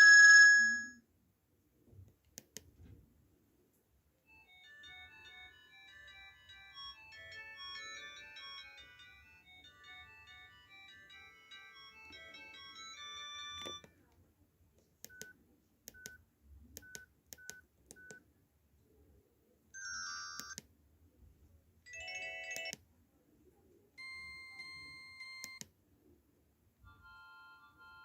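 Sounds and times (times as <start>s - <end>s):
electronic ringtone melody: 0.0s - 1.0s, 4.3s - 13.8s, 24.0s - 25.6s, 26.9s - 28.0s
short electronic tones: 0.0s - 1.0s.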